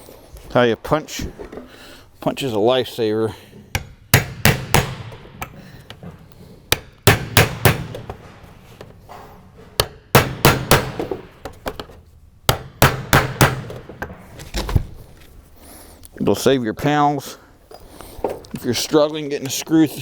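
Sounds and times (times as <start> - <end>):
hammer striking metal punch: 3.7 - 5.6, 6.7 - 8.3, 9.8 - 11.6, 12.5 - 14.2.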